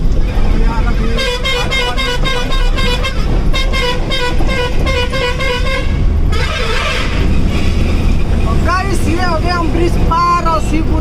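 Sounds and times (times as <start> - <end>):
truck engine rumble: 0.0 - 11.0
vehicle horn short toots: 1.2 - 7.2.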